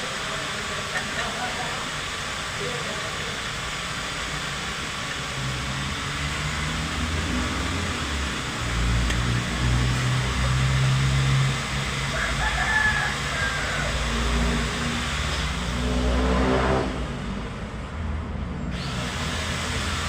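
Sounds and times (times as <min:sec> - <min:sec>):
rooster crowing: 0:12.0 - 0:14.5.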